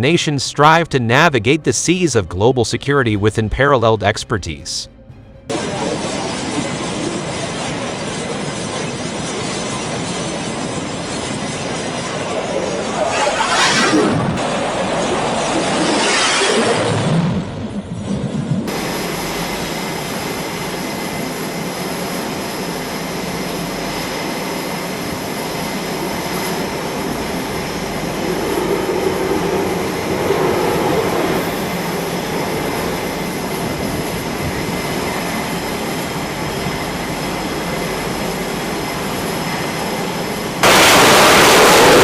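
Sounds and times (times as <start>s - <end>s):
jet engines running: 4.3s - 42.0s.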